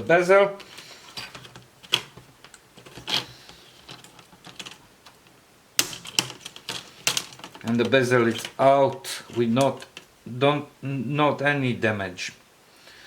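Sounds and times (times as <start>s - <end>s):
plastic clips clicking and snapping: 0.6s - 9.0s.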